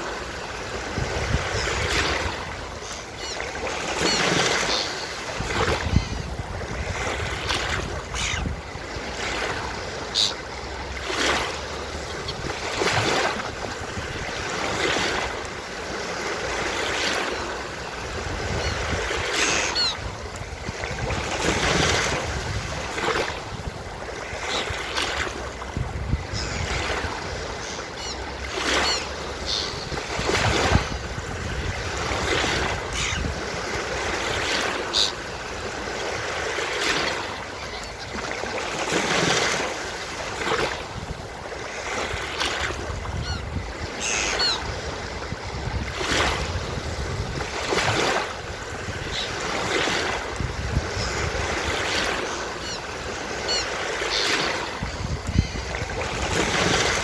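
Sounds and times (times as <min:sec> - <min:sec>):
ocean waves breaking on beach: 0:00.0 - 0:57.0.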